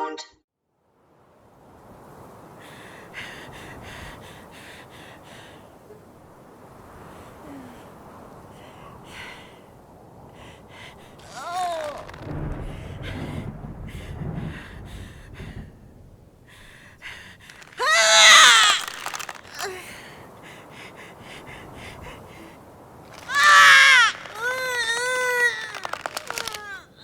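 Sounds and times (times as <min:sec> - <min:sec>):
wavering drawn-out cry: 0:11.1 - 0:12.4, 0:17.6 - 0:19.9, 0:23.1 - 0:27.0
woman screaming: 0:11.3 - 0:12.2, 0:17.8 - 0:19.8, 0:23.2 - 0:27.0.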